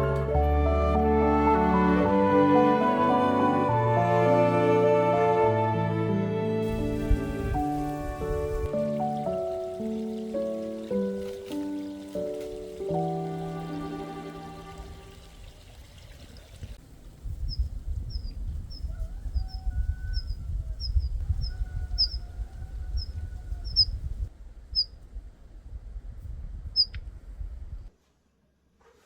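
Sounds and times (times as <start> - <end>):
low steady outdoor noise: 12.4 - 18.8, 24.0 - 28.8
small bird chirping: 17.4 - 22.2, 23.0 - 24.0, 24.7 - 25.0, 26.8 - 27.0.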